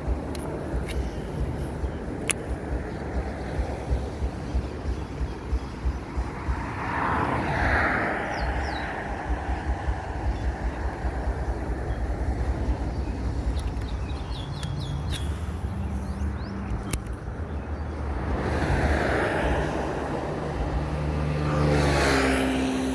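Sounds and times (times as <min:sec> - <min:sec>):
sharp clicks: 0:00.0 - 0:03.1, 0:10.3 - 0:17.5
wind buffeting microphone: 0:00.0 - 0:22.9
high bird chirps: 0:08.1 - 0:18.0.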